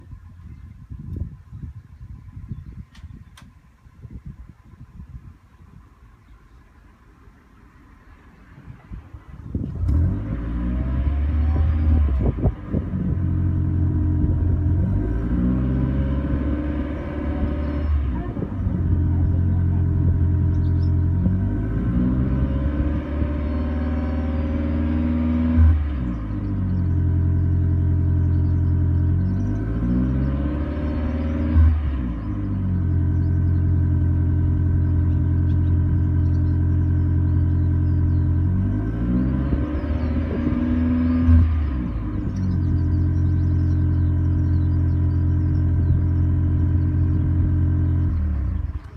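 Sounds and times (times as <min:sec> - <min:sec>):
car engine exhaust note: 0:07.6 - 0:48.9.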